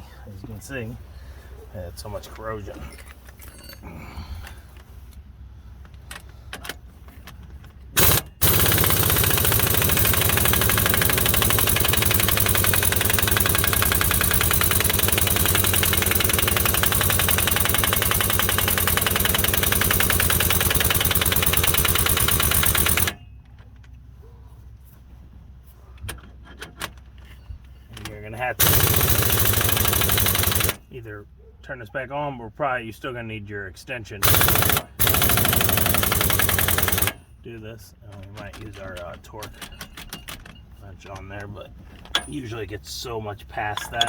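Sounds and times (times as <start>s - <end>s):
impact wrench hammering: 8.0s - 23.2s, 28.6s - 30.8s, 34.2s - 37.2s.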